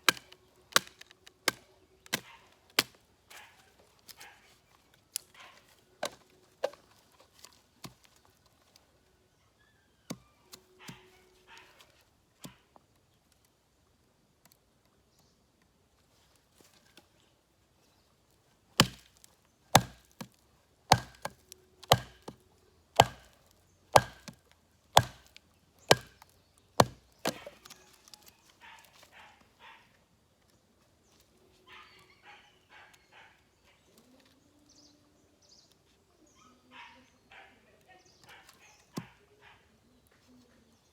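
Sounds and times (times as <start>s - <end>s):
knife chopping into wood: 18.8s - 22.4s, 23.0s - 23.4s, 24.0s - 27.8s.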